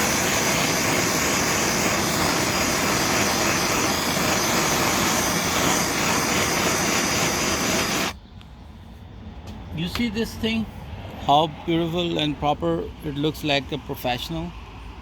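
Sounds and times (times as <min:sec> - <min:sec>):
gas torch hissing roar: 0:00.0 - 0:08.2.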